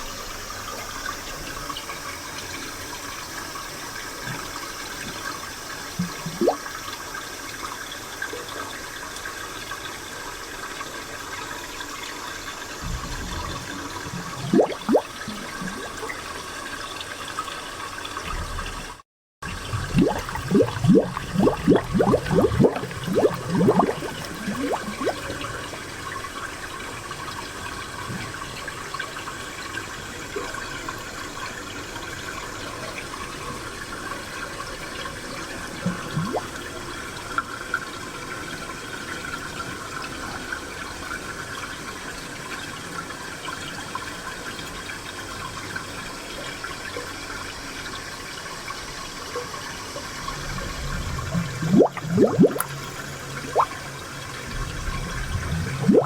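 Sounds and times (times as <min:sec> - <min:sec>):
spring water running: 0:00.0 - 0:30.3, 0:35.6 - 0:36.8, 0:48.6 - 0:56.0
gurgling plops: 0:06.0 - 0:06.6, 0:12.8 - 0:16.2, 0:18.3 - 0:26.0, 0:35.8 - 0:36.5, 0:50.1 - 0:56.0.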